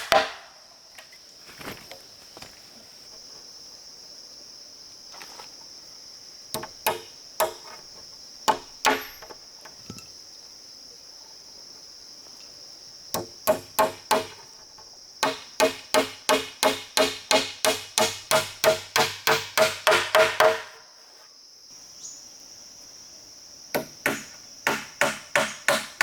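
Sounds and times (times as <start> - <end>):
tool chopping into wood: 0.0 - 0.5, 6.6 - 7.8, 8.5 - 9.3, 13.2 - 14.4, 15.2 - 20.8, 23.8 - 26.0
high insect drone: 0.0 - 26.0.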